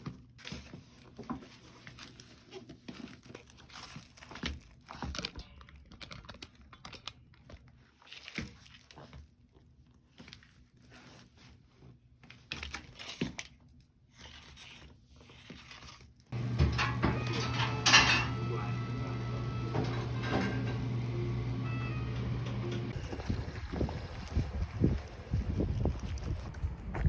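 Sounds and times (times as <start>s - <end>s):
packaging crinkling and tearing: 0.2s - 11.4s, 12.2s - 16.3s, 23.0s - 26.5s.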